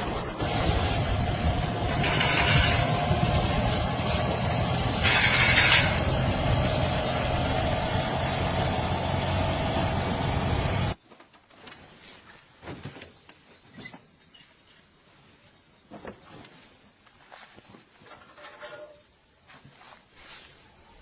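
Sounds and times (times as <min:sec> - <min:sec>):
motorcycle engine running: 0:00.0 - 0:11.0
short high-pitched engine noise: 0:00.0 - 0:11.0.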